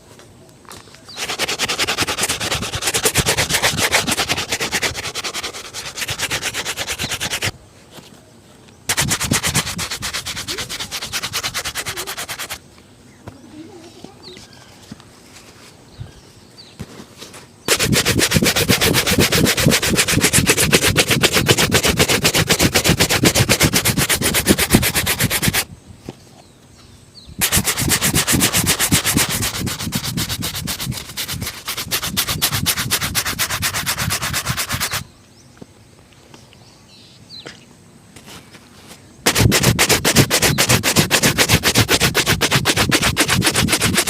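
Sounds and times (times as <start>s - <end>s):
shoe being buffed: 1.1s - 7.5s, 8.9s - 12.6s, 17.7s - 25.7s, 27.4s - 35.0s, 39.3s - 44.0s.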